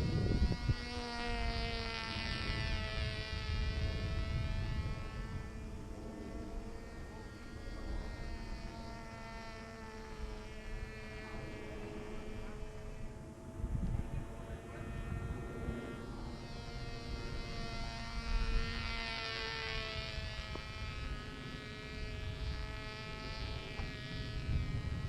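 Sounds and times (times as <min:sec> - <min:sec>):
model plane motor buzzing: 0:00.0 - 0:25.0
wind rumble on microphone: 0:00.0 - 0:25.0.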